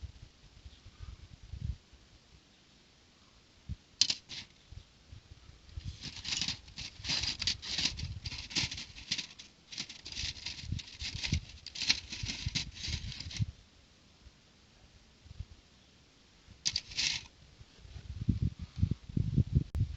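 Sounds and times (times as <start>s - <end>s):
toy bricks clicking: 4.0s - 4.4s
plastic bags crinkling: 5.9s - 13.4s, 16.7s - 17.3s.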